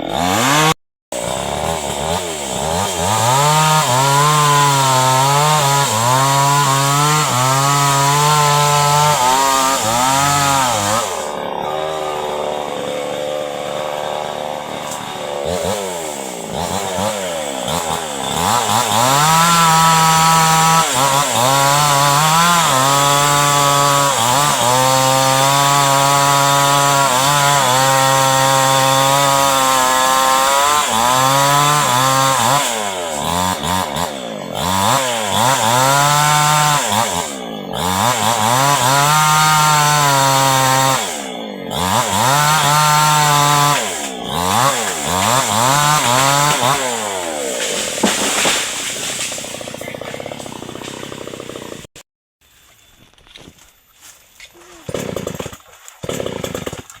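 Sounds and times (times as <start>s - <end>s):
chainsaw engine revving: 0.0s - 52.0s, 54.7s - 57.0s.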